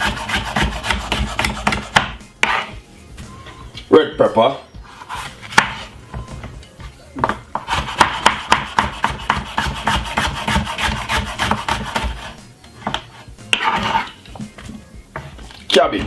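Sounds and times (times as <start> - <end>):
knife chopping on cutting board: 0.0 - 2.7, 5.0 - 5.8, 7.2 - 14.1.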